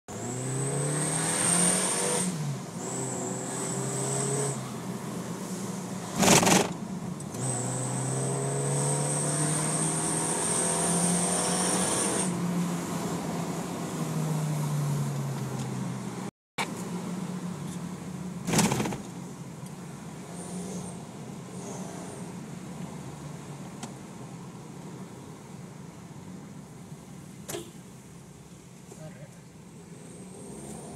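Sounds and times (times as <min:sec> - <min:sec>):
car engine revving: 0:06.0 - 0:12.3
short loud rush of noise: 0:06.1 - 0:06.8.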